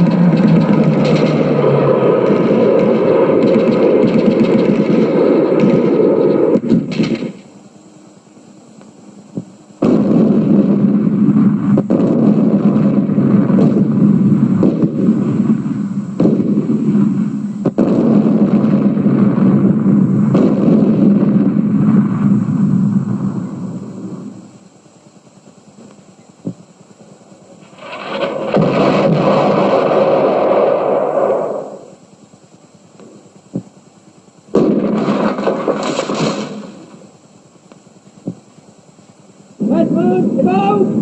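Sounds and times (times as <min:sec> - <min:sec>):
sharp bangs: 0:00.0 - 0:07.6, 0:09.8 - 0:24.6, 0:27.6 - 0:32.0, 0:34.5 - 0:37.2
heavy machine rumble: 0:00.0 - 0:41.0.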